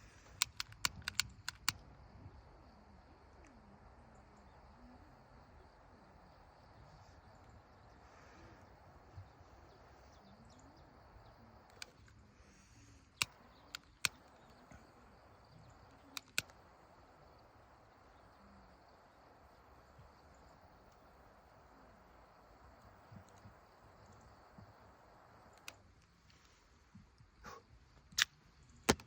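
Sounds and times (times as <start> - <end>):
steady outdoor hiss: 0.0 - 29.0
campfire pops: 0.2 - 1.9, 13.2 - 27.1, 28.0 - 29.0.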